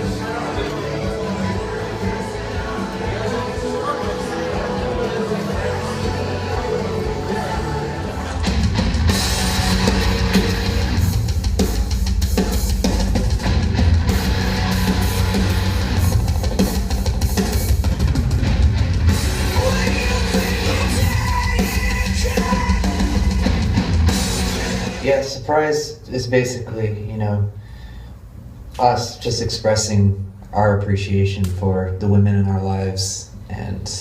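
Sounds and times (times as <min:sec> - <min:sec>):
rock music with heavy guitars: 0:00.0 - 0:25.1.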